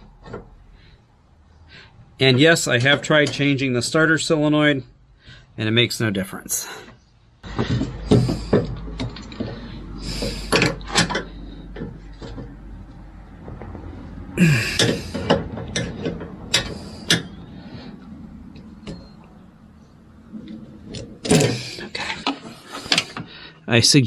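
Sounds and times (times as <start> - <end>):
metal rattling clatters: 7.4 - 23.4
metal tools clinking and knocking: 14.4 - 17.4.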